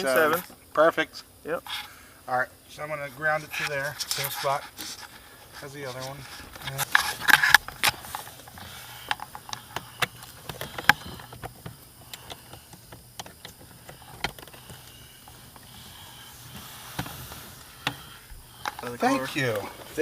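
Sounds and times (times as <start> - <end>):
faint low hum: 0.0 - 20.0
small clicks and knocks of tools: 6.5 - 17.2.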